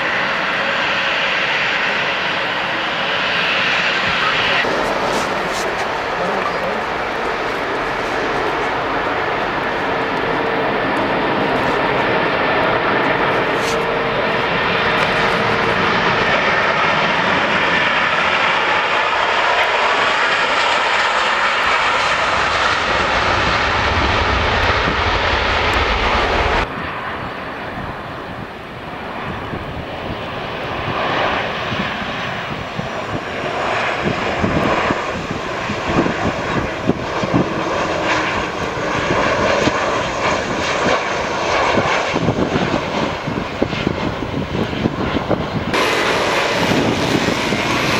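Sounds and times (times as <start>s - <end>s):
jet engines roaring: 0.0s - 47.9s
jet with crackling rumble: 0.0s - 47.9s.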